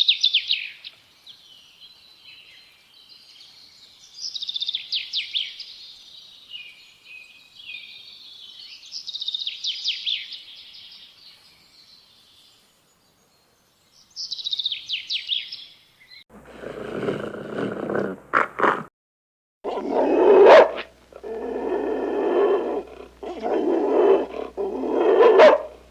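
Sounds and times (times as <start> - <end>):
songbird chirps and trills: 0.0 - 16.3.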